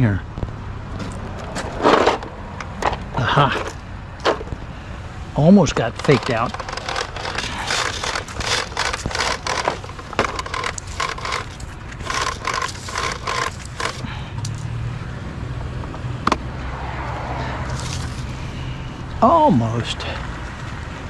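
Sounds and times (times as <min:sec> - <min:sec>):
scrap scraping and rattling: 0:01.0 - 0:04.6, 0:05.6 - 0:14.7, 0:17.7 - 0:18.4.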